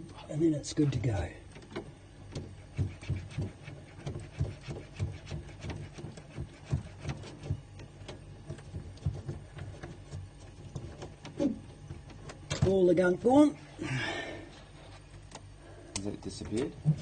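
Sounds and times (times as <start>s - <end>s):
low steady hum: 0.0s - 17.0s
wire scraping and clicking: 1.0s - 12.8s.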